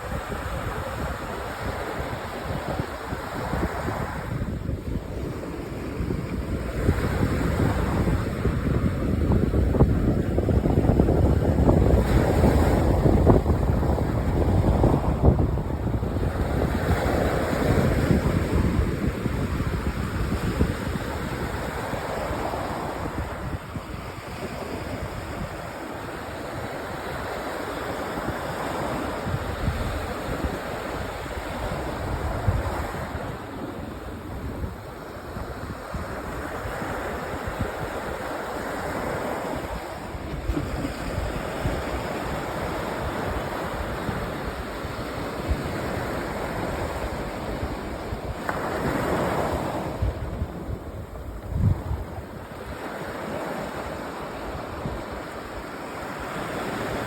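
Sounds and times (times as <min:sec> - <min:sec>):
sea waves breaking on beach: 0:00.0 - 0:57.0
wind rumble on microphone: 0:00.0 - 0:57.0.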